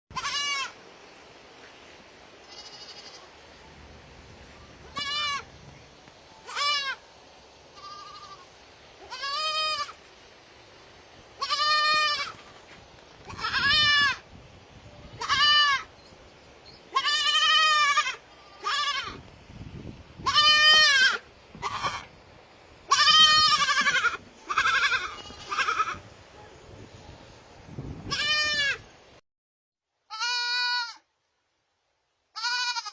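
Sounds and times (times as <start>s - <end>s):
baby goats bleating: 0.1s - 0.8s, 2.4s - 3.3s, 4.9s - 5.5s, 6.4s - 7.0s, 7.8s - 10.0s, 11.4s - 12.5s, 13.3s - 14.2s, 15.1s - 15.9s, 16.9s - 19.2s, 20.2s - 22.1s, 22.9s - 26.0s, 28.1s - 28.8s, 30.1s - 31.1s, 32.3s - 32.9s.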